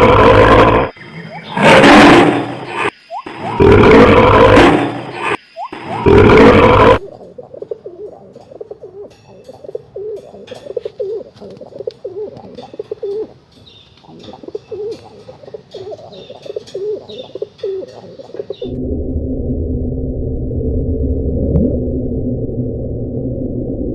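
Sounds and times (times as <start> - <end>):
pigeons cooing: 2.6 - 18.7
steady low droning: 18.6 - 23.9.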